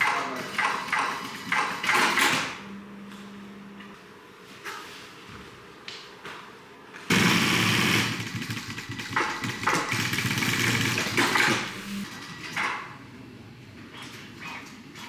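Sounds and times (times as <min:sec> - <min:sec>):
motor-driven machine running loudly: 0:07.1 - 0:12.8.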